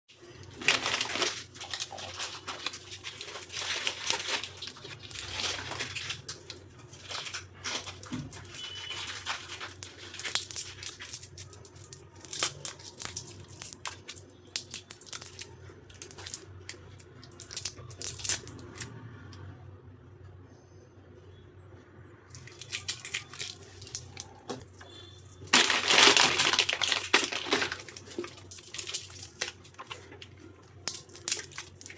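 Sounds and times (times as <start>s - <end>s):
wrappers rustling and crinkling: 0.1s - 18.9s, 22.3s - 31.9s
packaging tearing: 0.2s - 16.4s, 22.4s - 24.3s, 25.4s - 31.9s.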